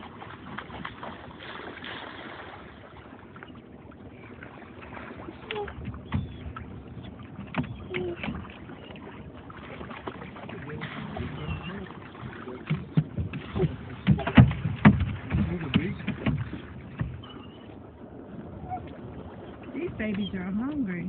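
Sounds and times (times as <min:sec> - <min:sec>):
pelicans splashing in water: 0:00.0 - 0:21.0
sharp knocks: 0:12.6 - 0:17.3.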